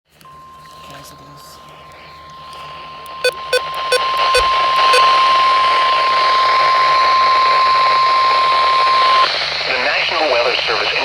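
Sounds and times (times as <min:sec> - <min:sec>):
steady high alarm tone: 0:00.3 - 0:09.3
radio hiss: 0:03.1 - 0:11.0.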